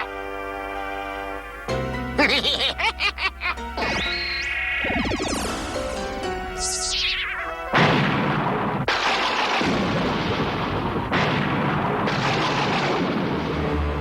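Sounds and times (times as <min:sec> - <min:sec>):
cartoon blast rushing noise: 0:03.8 - 0:13.6.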